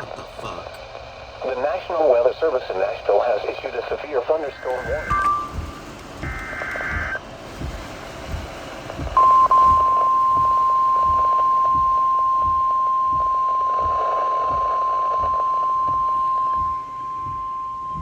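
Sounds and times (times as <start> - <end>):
steady high alarm tone: 4.7 - 7.2, 9.1 - 18.0.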